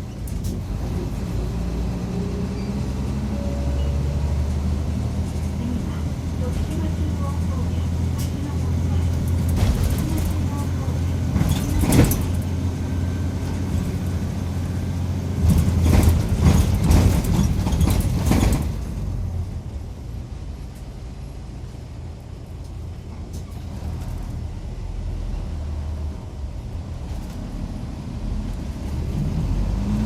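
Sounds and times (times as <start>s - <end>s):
bus diesel engine hum: 0.0s - 30.0s.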